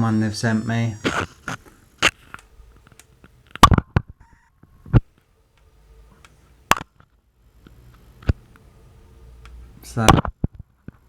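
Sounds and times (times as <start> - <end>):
power adapter high-pitched whine: 0.0 - 2.2.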